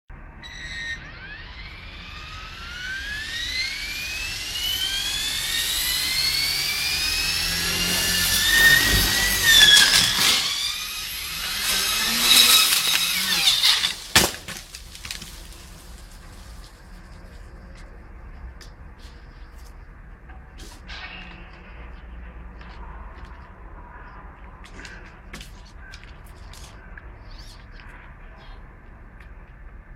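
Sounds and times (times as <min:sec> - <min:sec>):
rc helicopter whine: 0:00.2 - 0:18.6
rotor blades hitting branches: 0:00.7 - 0:17.4
sharp crack: 0:03.1 - 0:16.9.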